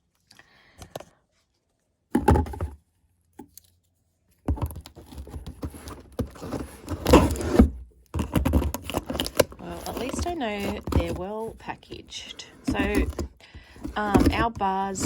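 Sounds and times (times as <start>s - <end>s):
rustling cardboard: 1.3s - 15.0s
knocks and scraping: 2.1s - 2.8s, 4.4s - 15.0s.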